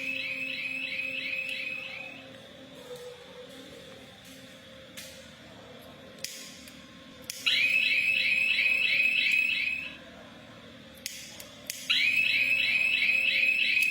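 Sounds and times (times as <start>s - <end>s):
high warbling alarm tone: 0.0s - 2.2s, 7.5s - 10.0s, 11.9s - 13.9s.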